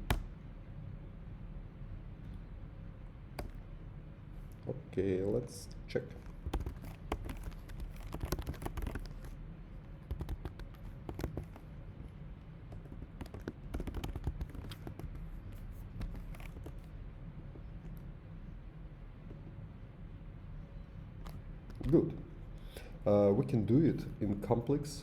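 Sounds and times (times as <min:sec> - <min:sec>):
keyboard typing: 0:00.0 - 0:00.3, 0:03.4 - 0:03.7, 0:06.0 - 0:17.0
low steady hum: 0:00.0 - 0:25.0.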